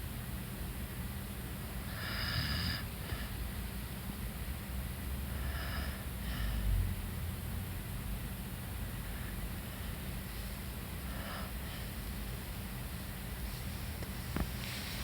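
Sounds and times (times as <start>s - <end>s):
dog snoring: 1.9s - 3.3s
dog breathing: 11.0s - 12.0s.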